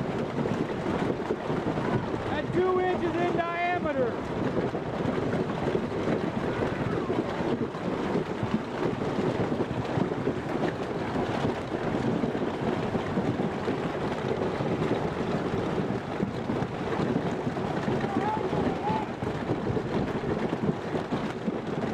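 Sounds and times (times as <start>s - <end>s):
hail clattering on hard surfaces: 0.2s - 7.4s, 15.8s - 21.9s.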